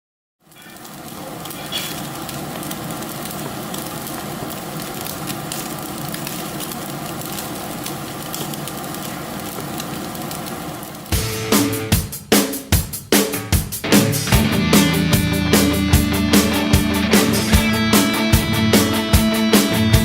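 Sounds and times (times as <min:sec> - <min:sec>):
food sizzling on a grill: 0:00.4 - 0:12.2.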